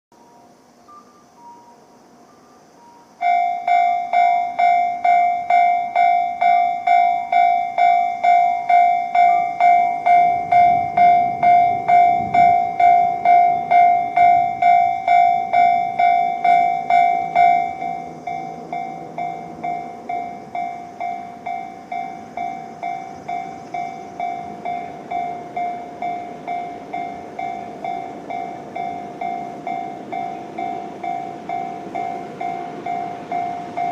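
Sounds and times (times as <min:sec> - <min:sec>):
level crossing warning bell: 0:00.2 - 0:33.9.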